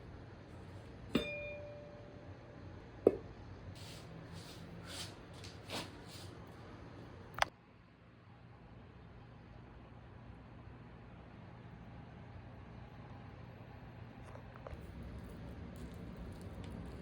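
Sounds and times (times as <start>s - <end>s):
tableware clinking: 1.1s - 2.0s
tableware knocking: 1.2s - 1.7s
soft brushing sounds: 3.8s - 6.5s.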